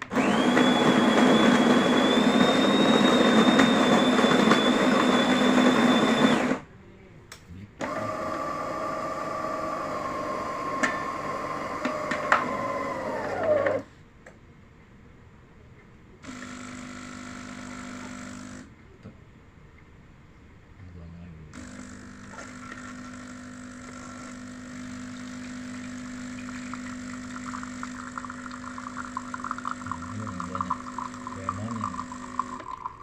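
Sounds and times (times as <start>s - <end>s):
quieter motor running: 21.5s - 33.0s.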